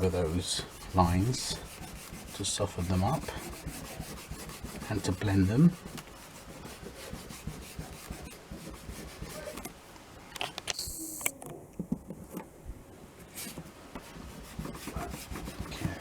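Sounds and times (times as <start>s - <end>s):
rubbing on wooden board: 0.0s - 9.7s, 13.3s - 16.0s.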